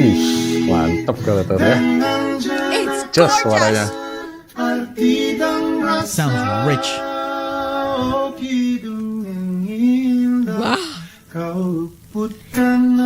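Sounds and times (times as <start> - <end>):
person singing long notes: 10.5 - 11.9.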